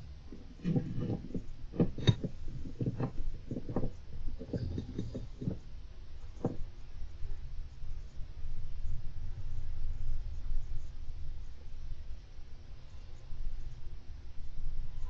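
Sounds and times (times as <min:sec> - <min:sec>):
low steady hum: 0:00.0 - 0:15.0
hamster scratching: 0:00.3 - 0:05.7.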